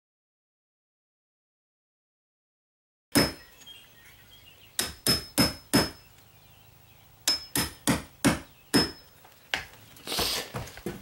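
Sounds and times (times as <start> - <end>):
hammer striking wood chisel: 3.1 - 3.5, 4.8 - 6.1, 7.2 - 9.1.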